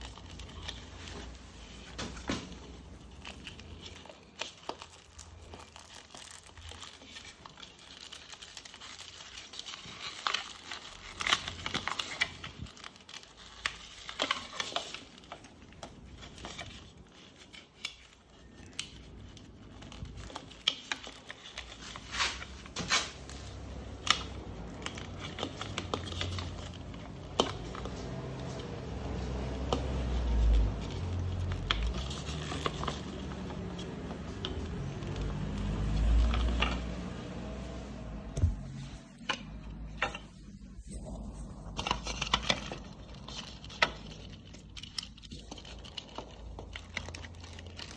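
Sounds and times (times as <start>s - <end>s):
crinkling: 0.0s - 47.9s
low rumble: 35.9s - 43.2s.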